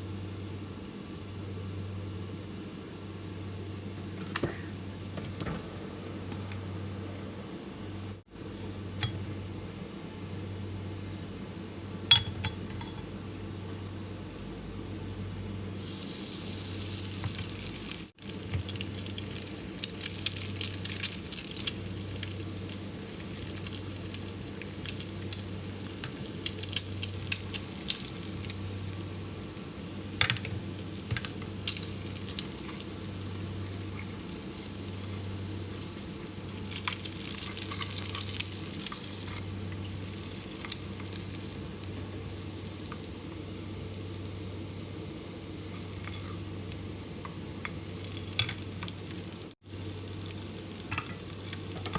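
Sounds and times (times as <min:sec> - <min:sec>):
steady low hum: 0:00.0 - 0:51.9
food sizzling in a pan: 0:15.7 - 0:51.9.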